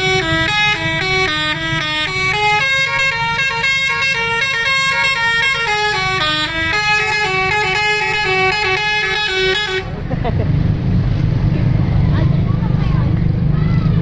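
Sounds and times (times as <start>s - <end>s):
musical air horn melody: 0.0s - 9.9s
low rumble of bus: 0.0s - 14.0s.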